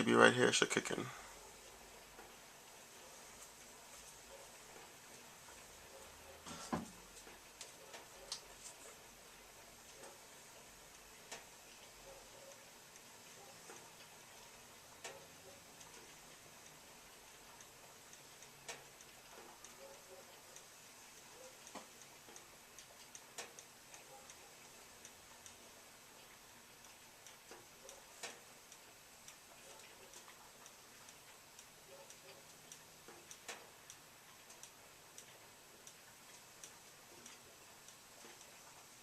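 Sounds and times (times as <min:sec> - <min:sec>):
faint ticks and clicks: 0:00.0 - 0:39.0.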